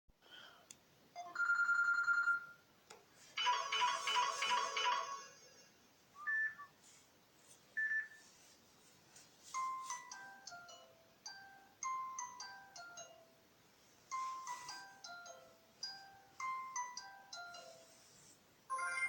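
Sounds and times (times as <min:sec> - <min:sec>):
phone notification tones: 0:14.1 - 0:17.8, 0:18.7 - 0:19.0.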